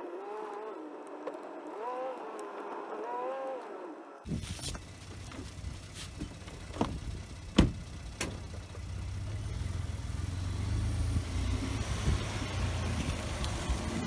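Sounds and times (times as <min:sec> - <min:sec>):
car driving drone from inside: 0:04.3 - 0:14.0
sharp knocks: 0:06.8 - 0:08.6.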